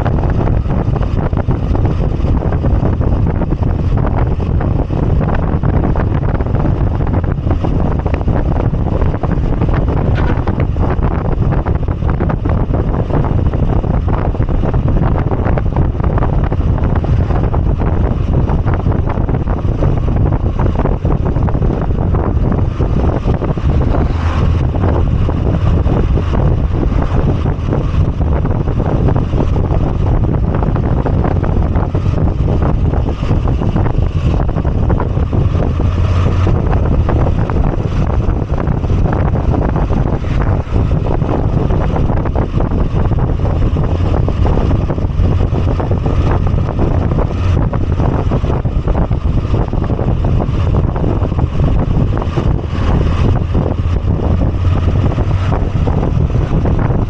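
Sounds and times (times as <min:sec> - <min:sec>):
motorcycle engine running: 0:00.0 - 0:57.0
wind buffeting microphone: 0:00.0 - 0:57.0.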